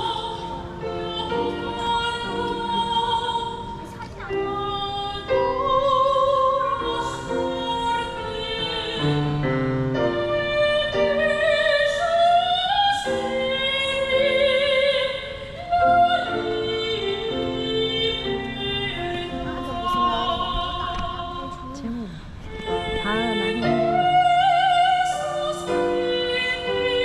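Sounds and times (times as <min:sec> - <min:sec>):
piano accompaniment: 0:00.0 - 0:27.0
operatic singing: 0:22.5 - 0:27.0.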